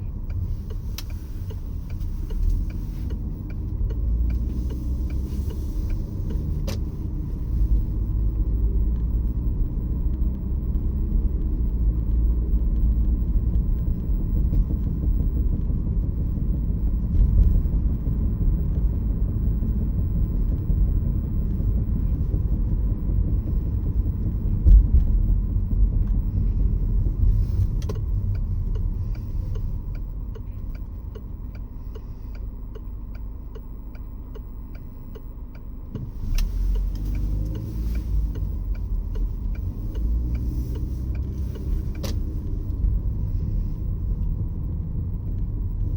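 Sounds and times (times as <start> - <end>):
car driving rumble from inside: 0.0 - 45.9
faint sharp ticks: 0.2 - 7.2, 8.1 - 15.8, 27.7 - 43.1.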